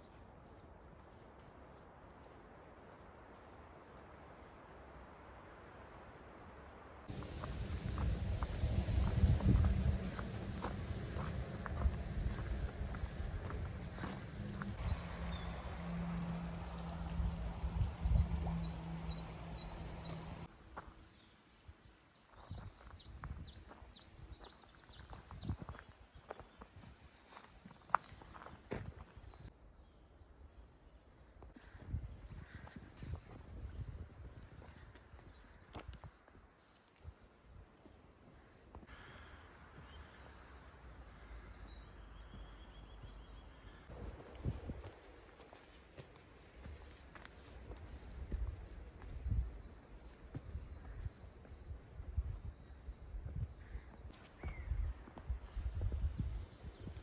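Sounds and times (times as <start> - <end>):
low wind-like rumble: 7.1 - 20.5
songbird singing: 7.1 - 26.6, 39.7 - 55.3.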